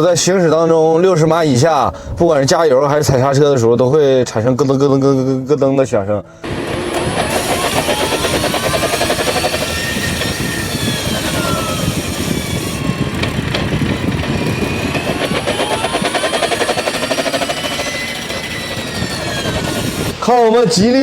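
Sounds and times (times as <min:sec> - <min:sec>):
car whine: 0:06.4 - 0:20.2
rapid rattling knock from drivetrain: 0:07.0 - 0:20.1.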